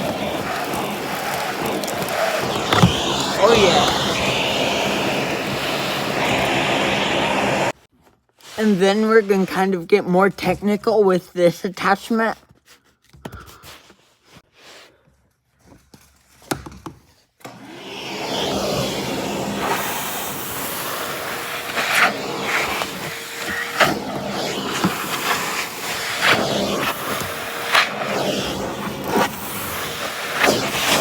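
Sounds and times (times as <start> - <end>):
nozzle knocking and scraping: 0.0 - 4.4
vacuum cleaner running: 0.0 - 7.8, 17.5 - 31.0.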